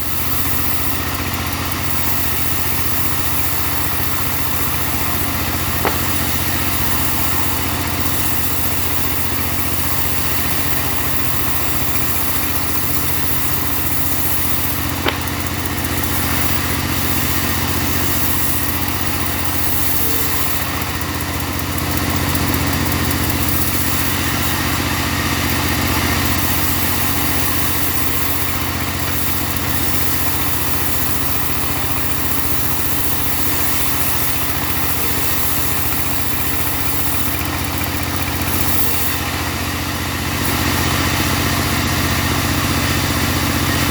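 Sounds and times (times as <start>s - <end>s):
sharp tick: 0.0s - 24.8s
sawmill engine sawing timber: 0.0s - 43.9s.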